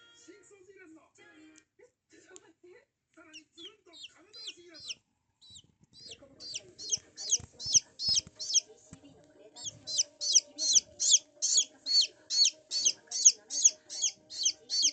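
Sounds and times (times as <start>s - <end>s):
chicks peeping: 3.3s - 8.7s, 9.6s - 14.9s.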